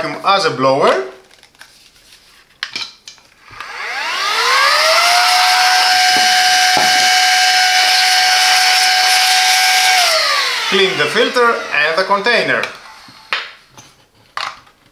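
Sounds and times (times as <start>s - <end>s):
handheld vacuum cleaner whine: 3.4s - 13.6s.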